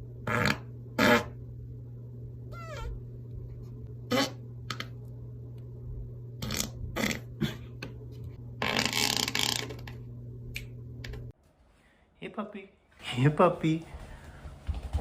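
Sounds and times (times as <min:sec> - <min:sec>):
steady low hum: 0:00.0 - 0:15.0
farts: 0:00.2 - 0:01.4, 0:04.1 - 0:04.4, 0:06.4 - 0:07.5.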